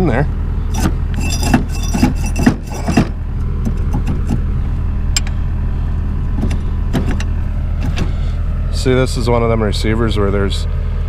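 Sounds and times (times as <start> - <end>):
engine idling: 0.0 - 11.0
metal clinks: 0.7 - 3.1.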